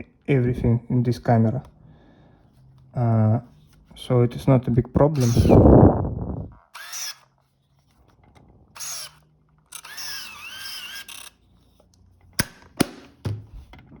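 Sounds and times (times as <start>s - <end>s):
sharp camera clicks: 5.2s - 5.7s, 12.4s - 13.2s
camera motor whirring: 5.2s - 7.3s, 8.7s - 11.8s.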